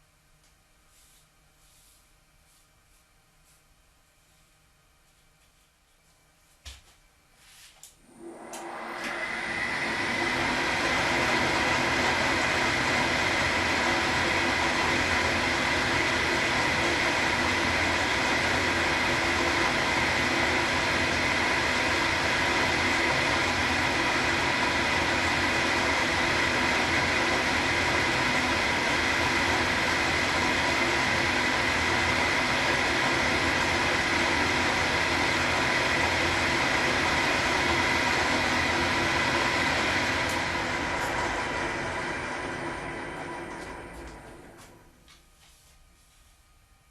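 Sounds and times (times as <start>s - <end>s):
milling machine whining: 8.0s - 44.9s.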